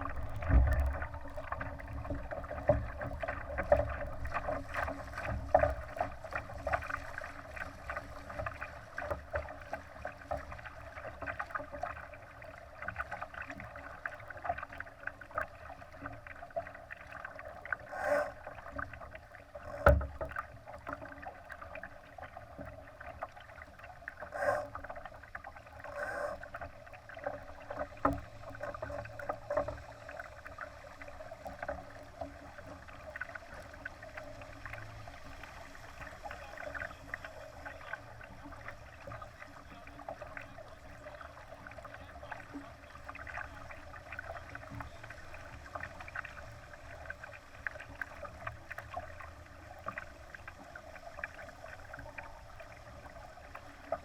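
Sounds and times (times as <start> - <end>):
water splashing against a hull: 0.0 - 54.0
sharp knocks on a hull: 19.7 - 20.4.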